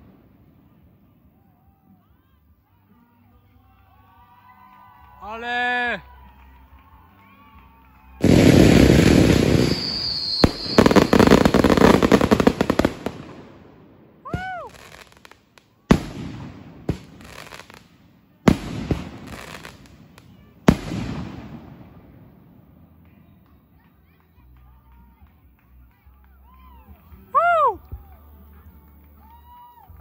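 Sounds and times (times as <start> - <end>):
firework crackle: 7.5 - 24.2
firework whistle: 8.2 - 12.3
loud firework blast: 8.2 - 14.7
firework bangs with echo: 18.5 - 22.4.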